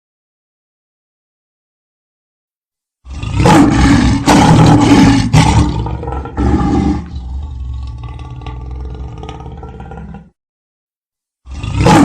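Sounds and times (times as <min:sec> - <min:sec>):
large animal roaring: 0:03.0 - 0:10.4, 0:11.5 - 0:12.0.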